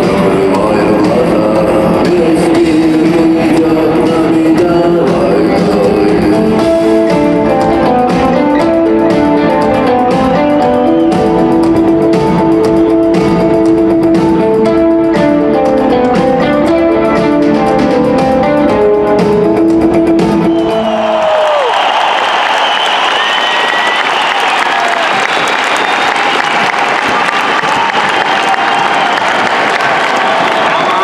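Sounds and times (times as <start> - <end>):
rock music with guitar melody: 0.0 - 20.8.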